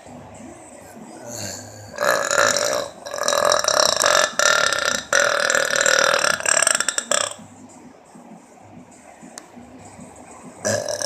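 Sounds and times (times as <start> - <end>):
loud human burps: 1.3 - 7.4, 10.6 - 11.0.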